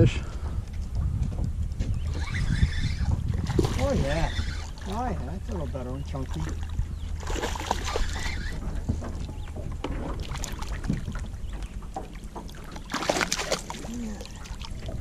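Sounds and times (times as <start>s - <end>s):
steady low hum: 0.0s - 15.0s
light knocks and rustles: 8.2s - 12.8s.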